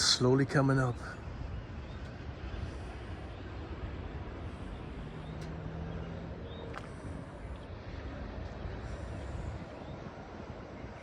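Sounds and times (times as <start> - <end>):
rushing background noise: 0.0 - 11.0.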